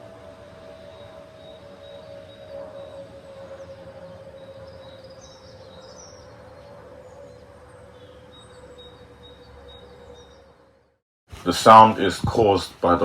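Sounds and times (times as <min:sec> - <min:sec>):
aircraft whistle: 0:00.0 - 0:10.6
birds chirping: 0:00.8 - 0:10.8
jet rumble: 0:11.4 - 0:13.0.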